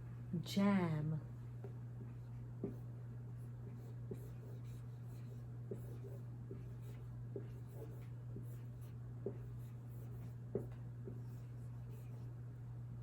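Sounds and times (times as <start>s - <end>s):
steady low hum: 0.0s - 13.0s
pen scratching on paper: 2.0s - 12.3s.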